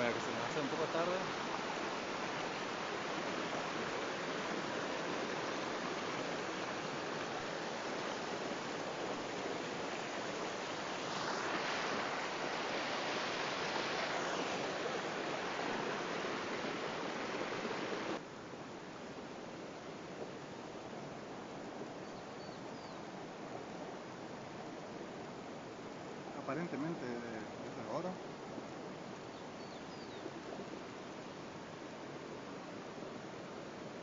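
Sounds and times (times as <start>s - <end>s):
waterfall rushing: 0.0s - 18.2s.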